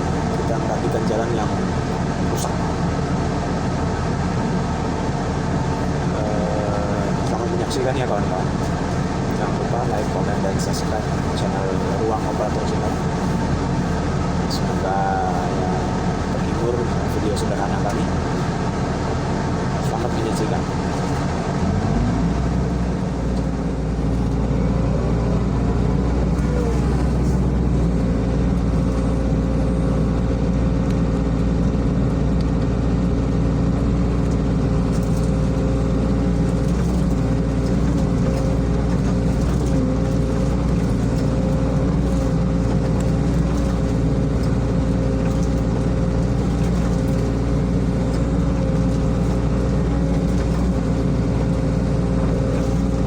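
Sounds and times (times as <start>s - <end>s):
excavator diesel engine: 0.0s - 53.0s.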